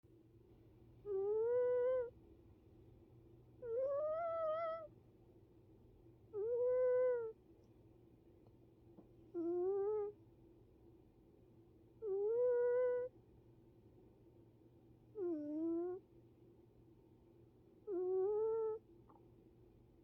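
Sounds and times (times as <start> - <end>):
cat snoring with whining tone: 1.0 - 2.1, 3.6 - 4.9, 6.3 - 7.3, 9.3 - 10.2, 12.0 - 13.1, 15.1 - 16.0, 17.8 - 19.2.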